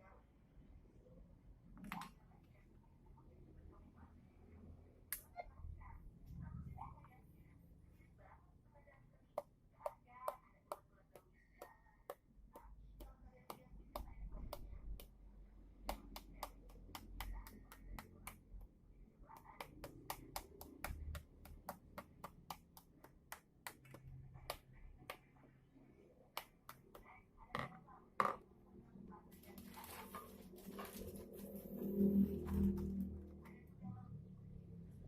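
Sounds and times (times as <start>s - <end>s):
faint low rumble: 0.1s - 9.0s, 27.1s - 35.0s.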